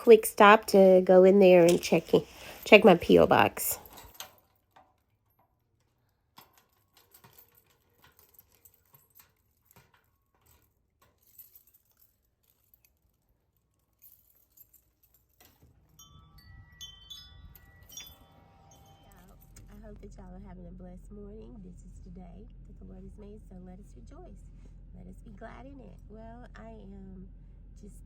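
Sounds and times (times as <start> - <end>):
faint low hum: 0.0 - 28.0
short ringing tones: 15.9 - 19.6.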